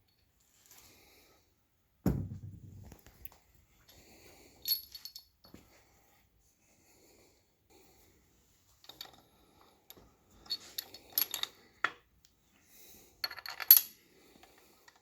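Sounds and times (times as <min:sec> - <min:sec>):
metallic clinks: 0:04.6 - 0:05.3.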